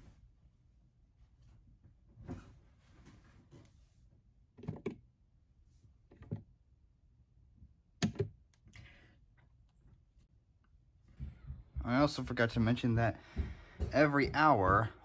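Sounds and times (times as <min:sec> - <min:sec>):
soft dull thumps: 0:11.1 - 0:15.0.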